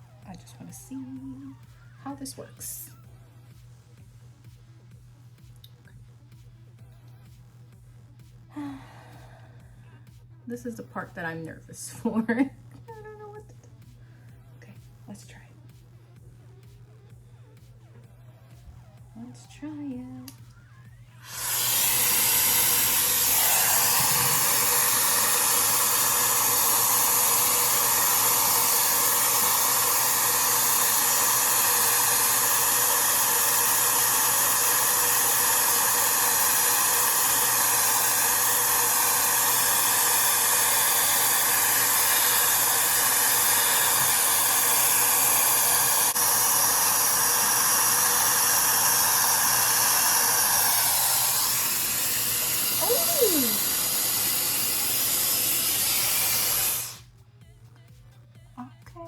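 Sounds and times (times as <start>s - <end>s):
hair styler motor whining: 21.2s - 57.0s.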